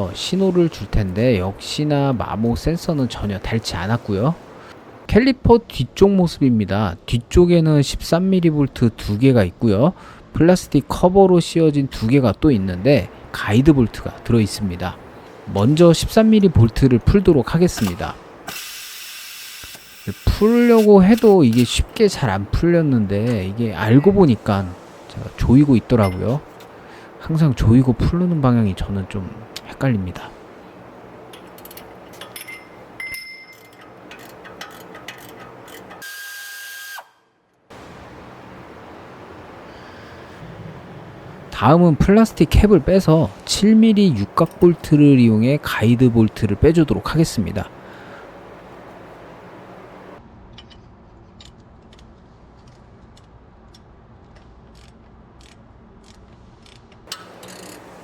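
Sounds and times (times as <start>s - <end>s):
whirring winding down: 17.8s - 21.8s
ratchet wrench and tools clinking: 19.6s - 22.0s, 31.3s - 36.0s, 54.7s - 57.9s.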